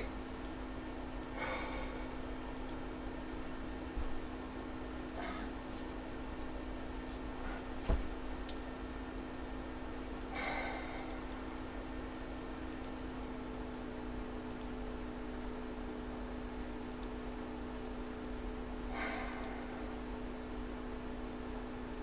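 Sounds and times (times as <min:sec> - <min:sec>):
steady electrical hum: 0:00.0 - 0:22.0
light clicks: 0:11.0 - 0:11.4.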